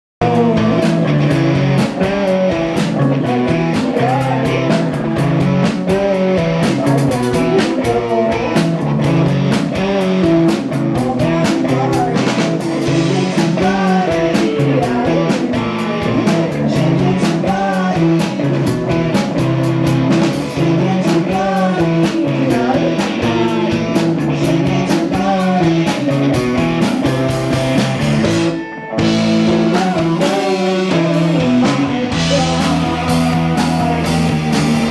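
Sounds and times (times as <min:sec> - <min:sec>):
person singing: 0:00.2 - 0:27.3, 0:29.0 - 0:34.9
drum beat: 0:00.2 - 0:34.9
electric guitar: 0:00.2 - 0:34.9.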